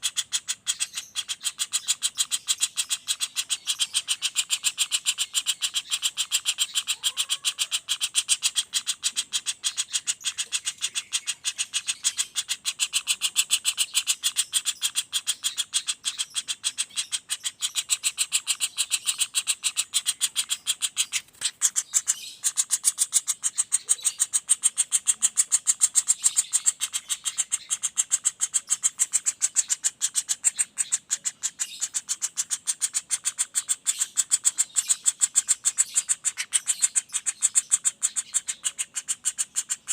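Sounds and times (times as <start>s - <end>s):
woodpecker rolling call: 0.0s - 39.9s.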